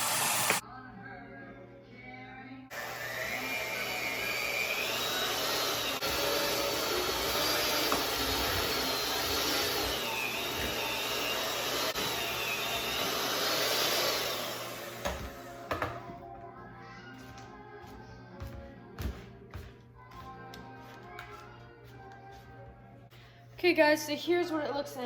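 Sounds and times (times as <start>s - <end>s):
electric mixer motor whine: 2.7s - 15.7s.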